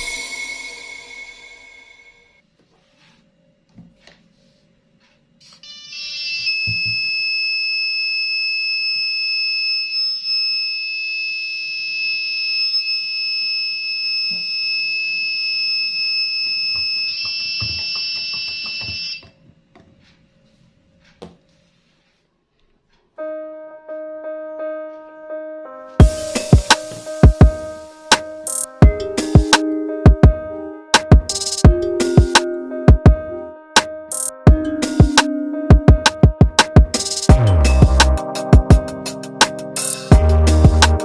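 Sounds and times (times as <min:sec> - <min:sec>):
background music: 0:00.0 - 0:02.4, 0:23.2 - 0:41.0
high-pitched electronic buzzer tone: 0:05.7 - 0:19.4.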